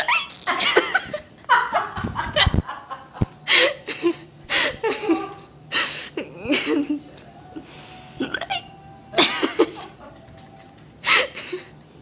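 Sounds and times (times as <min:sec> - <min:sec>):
person laughing: 0:00.1 - 0:05.5, 0:08.2 - 0:11.7
person hiccuping: 0:08.2 - 0:08.7.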